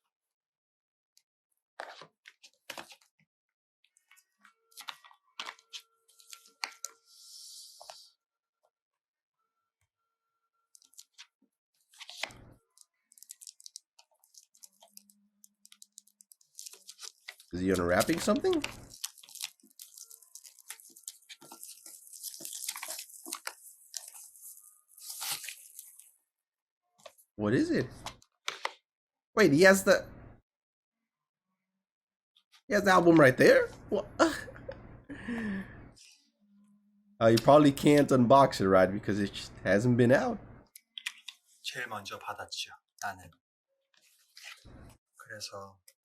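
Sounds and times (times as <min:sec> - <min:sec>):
packaging rustling and crackling: 0:10.8 - 0:26.1
packaging tearing: 0:13.1 - 0:26.0.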